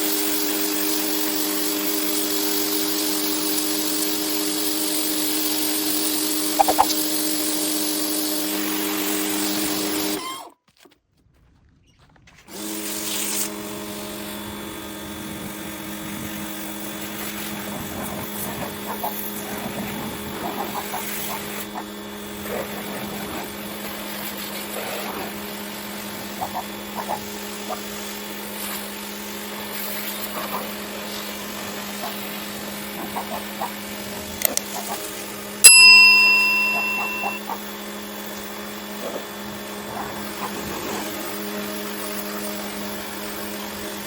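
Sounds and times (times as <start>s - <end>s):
pressure washer running: 0.0s - 10.2s, 12.5s - 44.0s
spray hissing: 6.6s - 7.0s.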